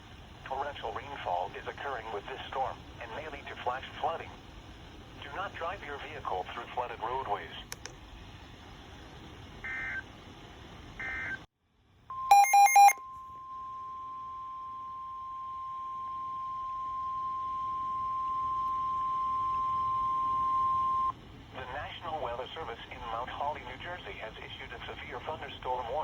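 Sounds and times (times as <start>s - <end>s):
short data chirps: 12.3s - 13.0s
steady alert tone: 12.3s - 13.0s.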